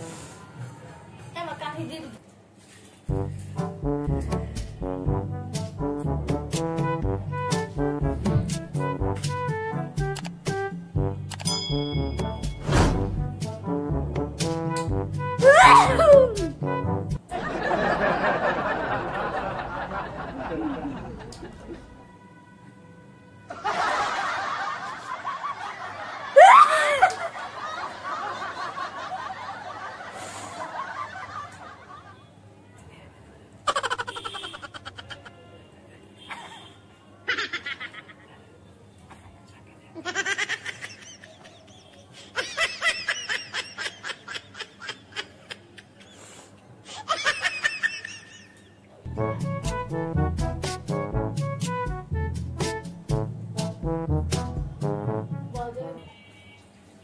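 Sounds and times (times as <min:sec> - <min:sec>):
brass music: 0:03.1 - 0:17.3, 0:49.1 - 0:56.0
person giggling: 0:15.4 - 0:16.5, 0:26.4 - 0:27.3
people laughing and snickering: 0:17.3 - 0:21.8, 0:23.5 - 0:32.3, 0:33.7 - 0:35.4, 0:37.3 - 0:38.4, 0:40.0 - 0:48.8.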